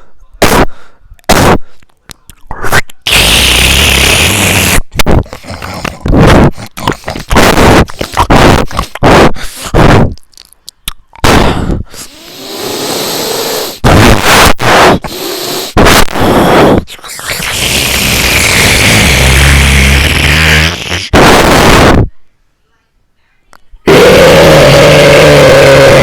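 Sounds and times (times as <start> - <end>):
short loud strange noises: 1.3 - 1.7, 2.5 - 10.2, 13.6 - 22.1.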